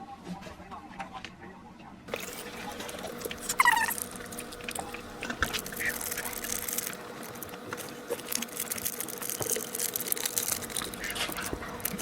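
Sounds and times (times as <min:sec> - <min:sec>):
dense crackling: 0:02.1 - 0:12.0
plastic bag crinkling: 0:02.1 - 0:12.0.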